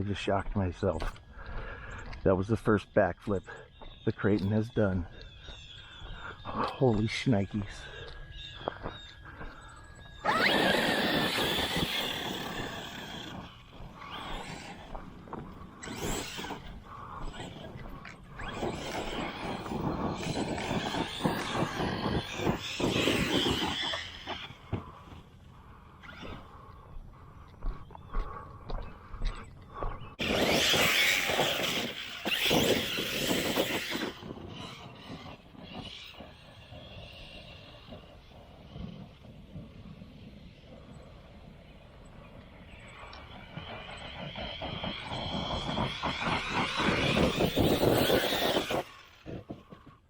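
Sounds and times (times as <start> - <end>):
electric motor whine: 9.4 - 25.4, 30.2 - 39.0, 42.6 - 49.7
throttle surges: 9.6 - 28.4, 30.0 - 49.9.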